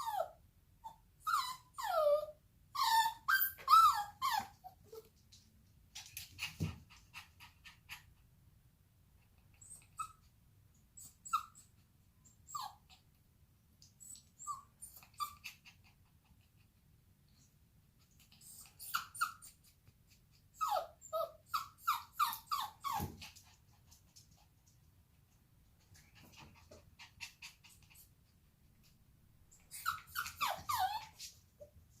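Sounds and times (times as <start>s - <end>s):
dog whimpering: 0.0s - 5.1s, 9.4s - 10.3s, 11.0s - 13.0s, 14.0s - 16.6s, 18.0s - 23.4s, 29.5s - 31.4s
puppy whining: 0.0s - 5.3s, 9.2s - 13.2s, 13.9s - 16.8s, 17.4s - 24.4s, 25.8s - 31.8s.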